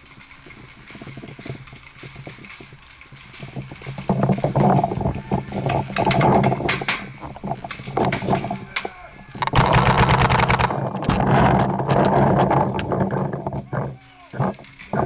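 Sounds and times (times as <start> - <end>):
gear clattering: 0.0 - 15.0
paintball markers firing: 9.4 - 11.3.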